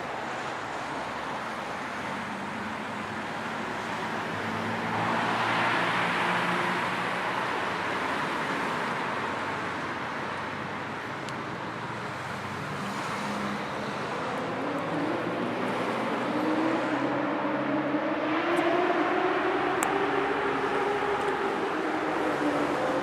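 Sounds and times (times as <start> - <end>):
cars passing: 0.0 - 23.0
engine rising in pitch: 13.3 - 23.0.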